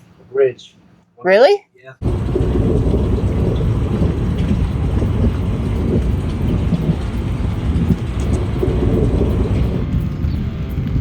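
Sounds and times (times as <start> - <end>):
wind: 0.0 - 11.0
heavy rain: 2.0 - 10.0.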